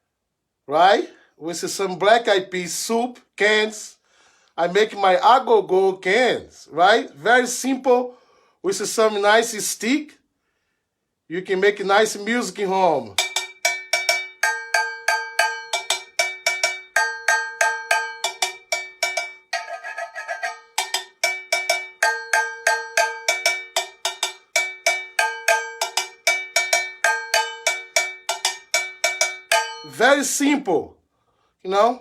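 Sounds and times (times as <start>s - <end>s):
can bell struck with stick: 13.2s - 30.0s
rasping scraping sound: 18.7s - 21.8s.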